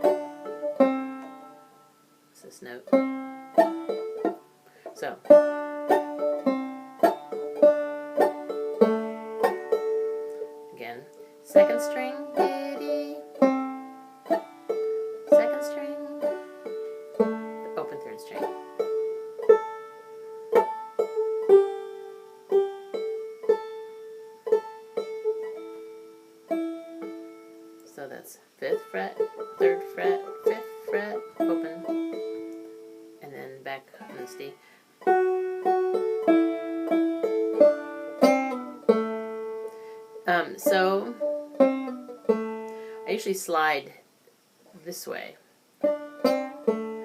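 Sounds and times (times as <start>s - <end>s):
banjo picking slow melody: 0.0s - 47.0s.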